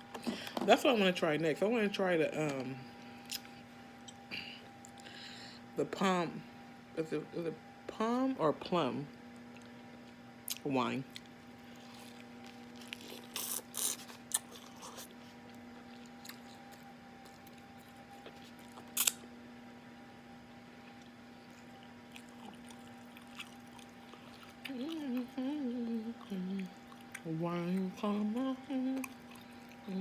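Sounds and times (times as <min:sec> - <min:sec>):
steady low hum: 0:00.0 - 0:30.0
mouth noises of eating: 0:20.8 - 0:30.0
person humming: 0:24.6 - 0:29.2.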